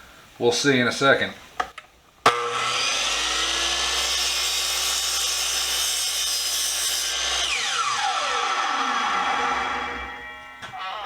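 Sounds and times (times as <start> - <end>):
chop saw cutting wood: 2.3 - 10.2
saw motor winding down: 2.4 - 5.8, 7.0 - 10.6.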